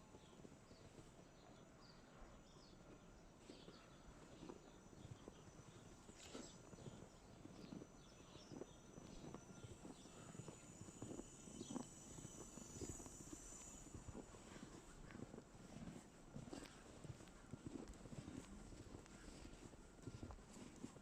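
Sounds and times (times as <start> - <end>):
small chirps: 3.5 - 15.3.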